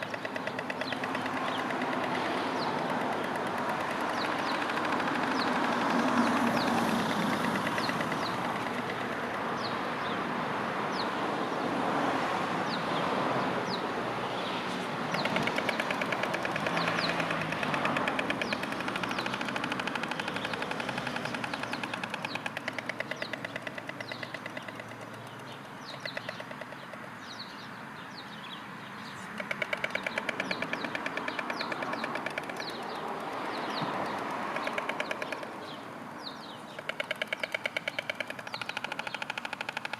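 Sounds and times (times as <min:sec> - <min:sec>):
storks clattering bills: 0:00.0 - 0:09.7, 0:15.1 - 0:27.4, 0:29.2 - 0:35.6
small bird chirping: 0:00.0 - 0:10.2, 0:15.1 - 0:39.9
road traffic noise: 0:00.0 - 0:39.9.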